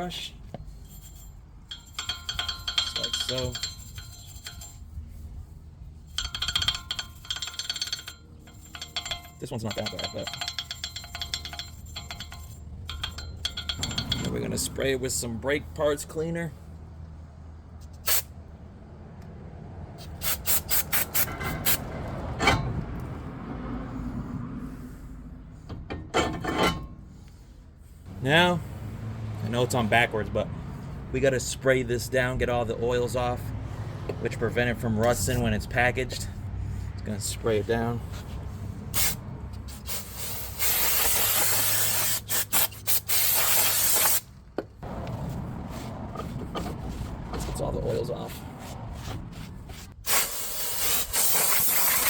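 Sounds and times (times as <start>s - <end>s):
wire brush scraping metal: 39.0s - 44.3s.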